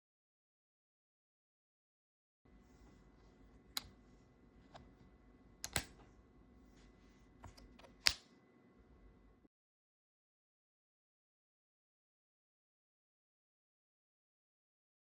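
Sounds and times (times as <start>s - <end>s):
keyboard typing: 5.6s - 6.0s.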